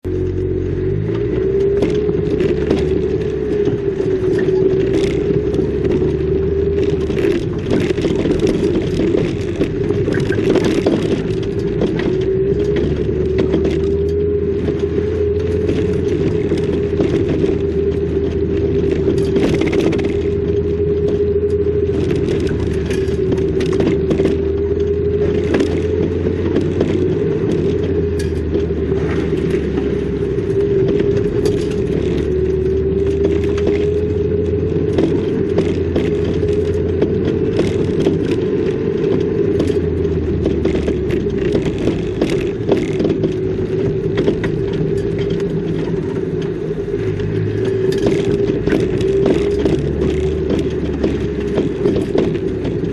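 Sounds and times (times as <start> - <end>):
car engine drone: 0.0 - 52.9
rattles and knocks over rough road: 0.0 - 52.9.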